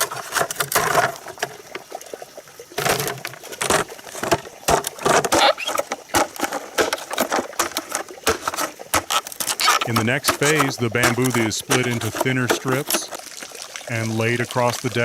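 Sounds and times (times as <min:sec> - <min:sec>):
bamboo knocks and scrapes: 0:00.0 - 0:01.6, 0:02.8 - 0:13.2.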